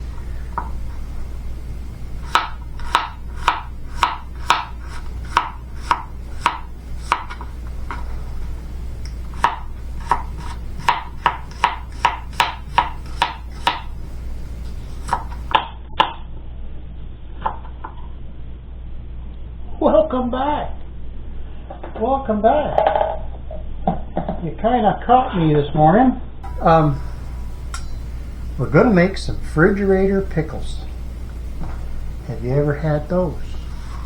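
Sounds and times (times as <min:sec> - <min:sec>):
low steady hum: 0:00.0 - 0:24.9, 0:26.0 - 0:34.0
knife chopping on cutting board: 0:02.2 - 0:08.1, 0:09.3 - 0:13.9, 0:14.9 - 0:15.6.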